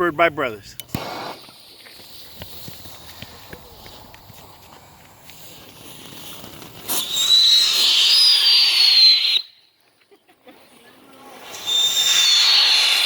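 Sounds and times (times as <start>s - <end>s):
firework igniting pop: 0.8s - 9.4s, 11.4s - 13.0s
firework hissing: 0.8s - 9.6s, 11.2s - 13.0s
firework whistle: 0.9s - 3.5s, 5.3s - 9.8s, 11.3s - 13.0s.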